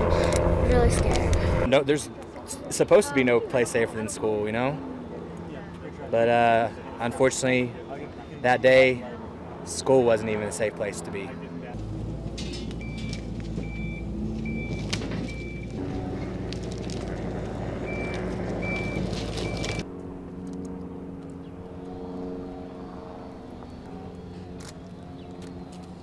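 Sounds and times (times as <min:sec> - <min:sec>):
low engine rumble: 0:00.0 - 0:26.0
backup alarm beeping: 0:12.8 - 0:15.8, 0:17.8 - 0:19.8.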